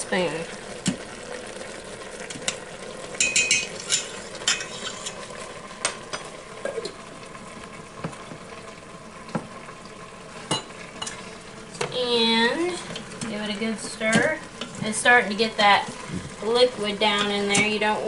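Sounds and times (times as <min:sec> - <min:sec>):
food sizzling in a pan: 0:00.0 - 0:18.0
spoon scraping a pan: 0:03.2 - 0:05.3.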